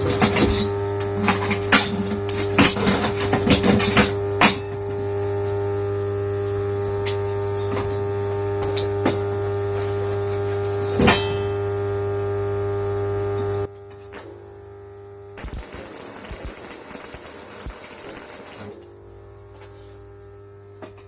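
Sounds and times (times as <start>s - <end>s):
electrical mains hum: 0.0s - 21.0s
metal clank with high ring: 11.0s - 12.4s.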